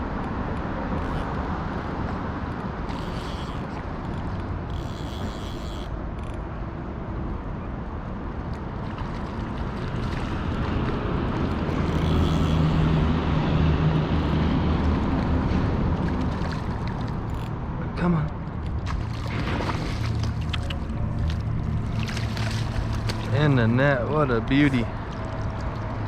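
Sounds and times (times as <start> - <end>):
river water rushing: 18.7 - 26.0.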